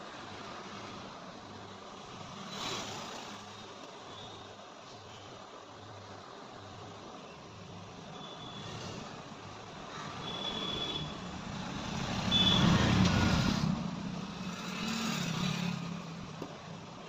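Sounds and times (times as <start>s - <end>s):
motor vehicle passing: 11.2s - 16.3s.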